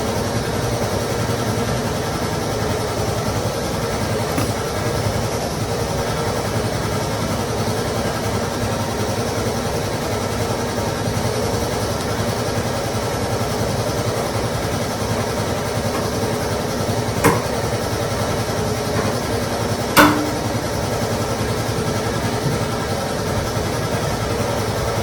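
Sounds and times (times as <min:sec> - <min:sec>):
machine running with low hum: 0:00.0 - 0:25.0
sharp knock: 0:17.2 - 0:17.6, 0:20.0 - 0:20.9.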